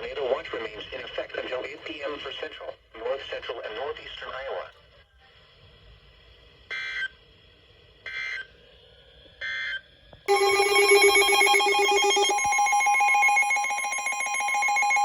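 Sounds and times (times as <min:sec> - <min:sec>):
digital data tone bursts: 0:10.3 - 0:15.0
harsh emergency attention tone: 0:10.3 - 0:15.0.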